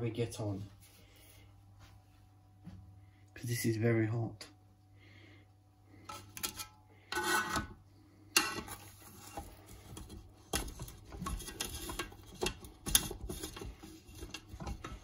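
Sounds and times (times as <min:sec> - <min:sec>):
cookware scraping: 0:06.0 - 0:07.8, 0:08.4 - 0:10.2.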